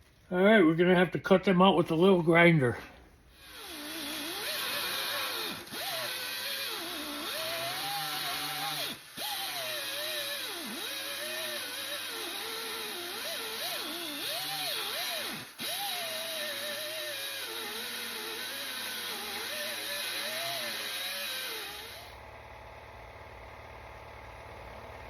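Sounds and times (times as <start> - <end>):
angle grinder cutting steel: 3.4 - 22.2.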